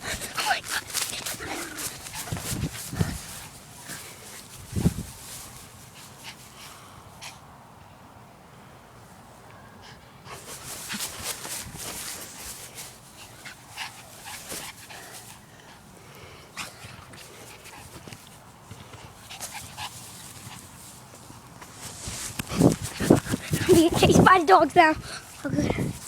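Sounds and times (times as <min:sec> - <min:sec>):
puppies scuffling: 0:00.0 - 0:06.5, 0:10.4 - 0:15.5.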